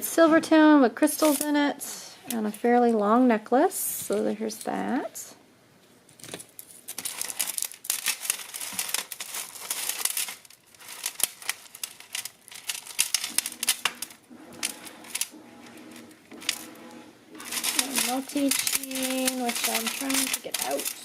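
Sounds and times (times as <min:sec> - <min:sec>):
crinkling: 0:01.2 - 0:01.6, 0:05.8 - 0:21.0
jewelry chains clicking and rattling: 0:06.5 - 0:15.3, 0:17.4 - 0:21.0.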